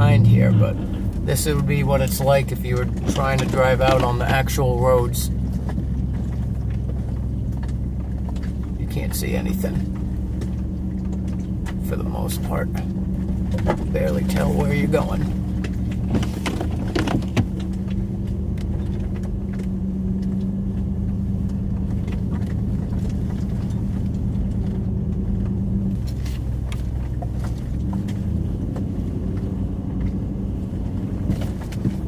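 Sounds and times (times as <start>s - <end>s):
steady hum: 0.0s - 27.6s
pickup truck engine droning: 0.0s - 32.0s.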